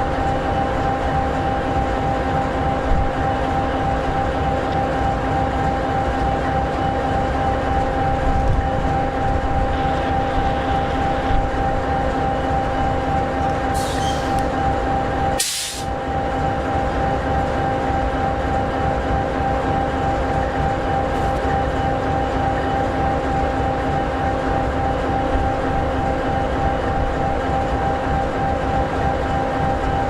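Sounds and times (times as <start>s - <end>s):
diesel locomotive idling: 0.0s - 30.0s
air hissing: 13.8s - 14.4s, 15.4s - 15.9s.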